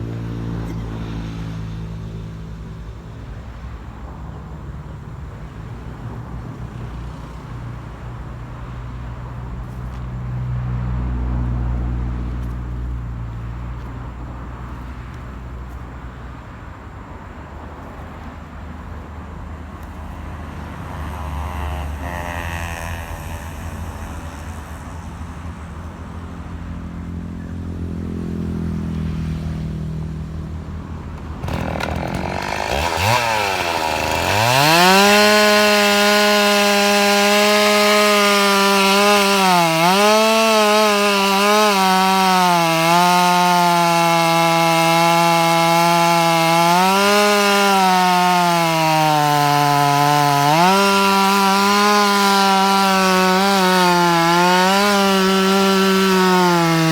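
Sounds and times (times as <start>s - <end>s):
chainsaw revving: 20.7s - 25.2s, 31.0s - 56.9s.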